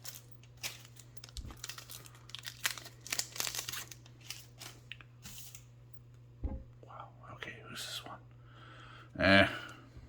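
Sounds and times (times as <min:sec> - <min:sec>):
card pack wrapper crinkling and tearing: 0:00.0 - 0:05.6.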